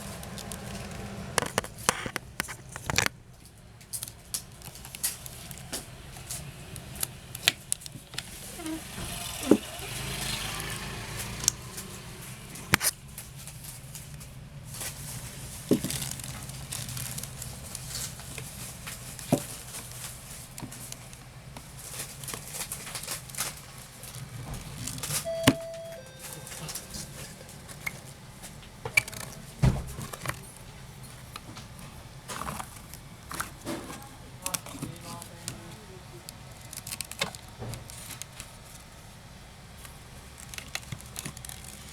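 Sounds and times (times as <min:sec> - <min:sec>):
low steady hum: 0:25.2 - 0:37.2.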